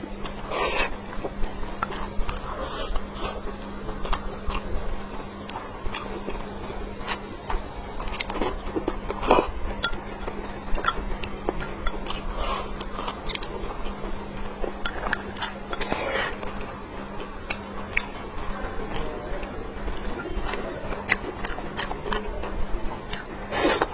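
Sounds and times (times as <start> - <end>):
faint steady hum: 0.0 - 23.9
chewing and mouth sounds: 0.1 - 23.9
utensils clinking against bowl: 9.2 - 16.4.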